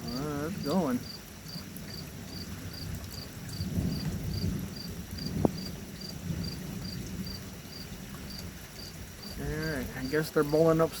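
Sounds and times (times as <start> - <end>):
distant thunder rumble: 0.0 - 10.8
cricket chirping: 5.6 - 10.2.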